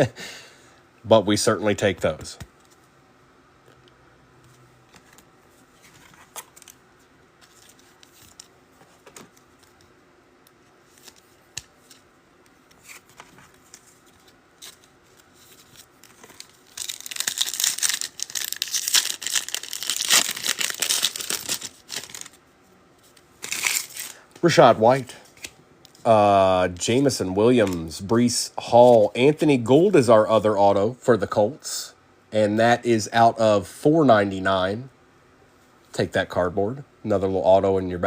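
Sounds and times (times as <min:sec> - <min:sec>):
foil wrapper tearing and crinkling: 0:15.5 - 0:22.4, 0:23.4 - 0:24.2.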